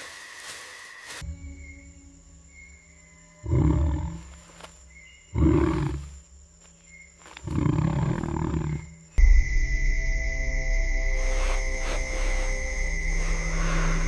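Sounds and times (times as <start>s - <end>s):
music: 1.2s - 3.8s, 9.0s - 14.0s.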